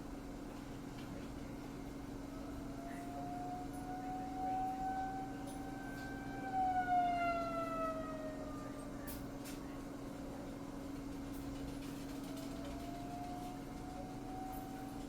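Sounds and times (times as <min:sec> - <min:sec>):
warning siren wailing: 0:02.2 - 0:09.2, 0:12.2 - 0:15.0.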